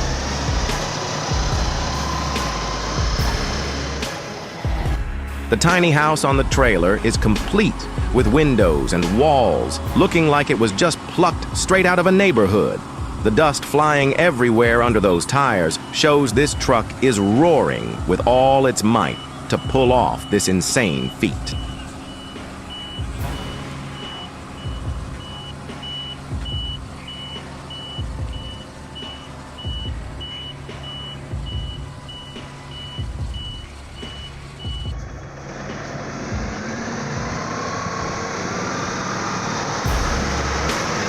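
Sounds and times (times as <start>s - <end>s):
reversing alarm beeping: 0.0s - 3.9s, 14.7s - 35.0s
engine running: 0.0s - 41.0s
rising engine whine: 0.0s - 41.0s
low thumps: 21.4s - 27.0s.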